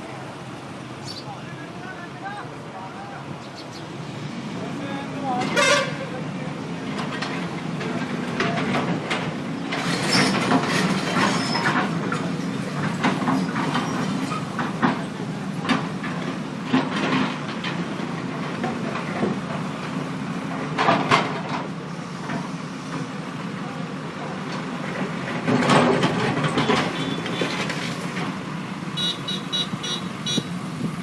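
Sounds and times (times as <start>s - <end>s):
heavy diesel machinery running: 0.0s - 31.0s
clattering and scraping of rubble: 6.9s - 20.0s, 24.4s - 28.4s.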